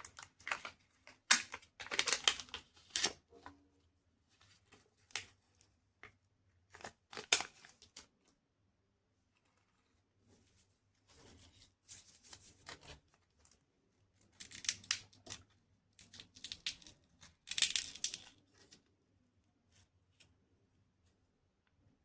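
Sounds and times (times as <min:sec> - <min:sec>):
wrapper crinkling: 0:00.0 - 0:03.2.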